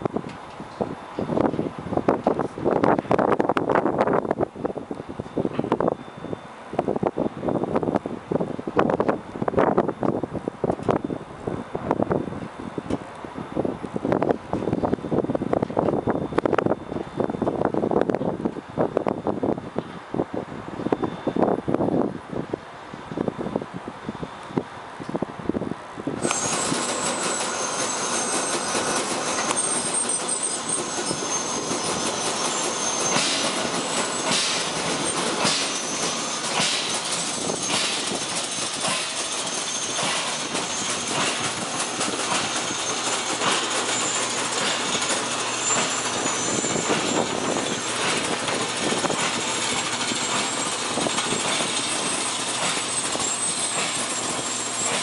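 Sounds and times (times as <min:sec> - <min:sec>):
machine clattering: 0:26.2 - 0:55.0.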